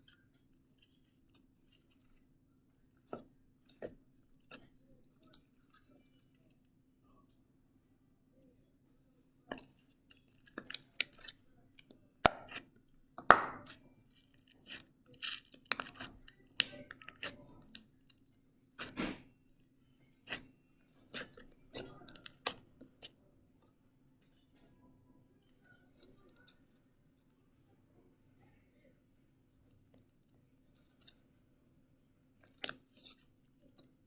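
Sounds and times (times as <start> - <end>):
faint low hum: 0.0 - 34.0
slime squelching and popping: 9.5 - 19.3.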